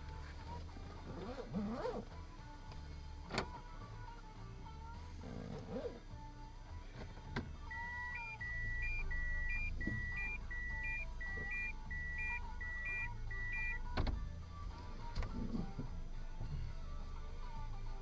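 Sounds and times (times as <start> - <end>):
car interior rumble: 7.0 - 18.0
electronic alert beeps: 7.7 - 13.8.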